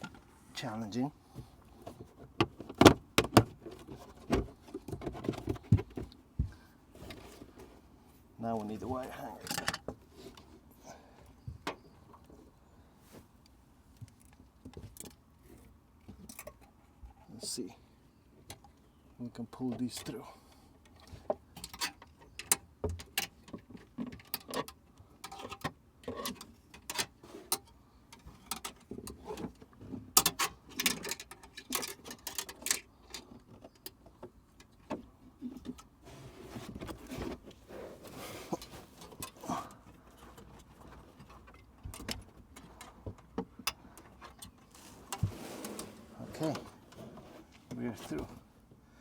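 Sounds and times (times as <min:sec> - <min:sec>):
wire hanger and cable rustling: 0:35.4 - 0:48.5.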